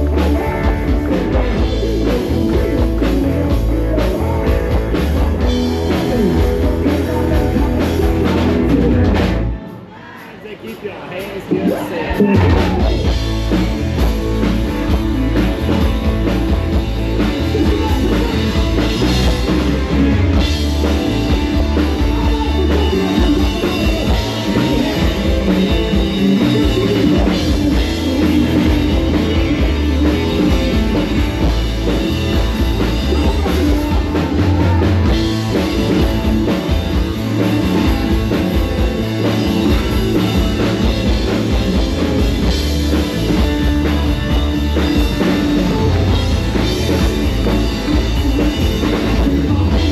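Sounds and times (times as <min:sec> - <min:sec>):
person singing: 0:00.0 - 0:13.2, 0:16.7 - 0:42.5
live rock band playing: 0:00.0 - 0:49.9.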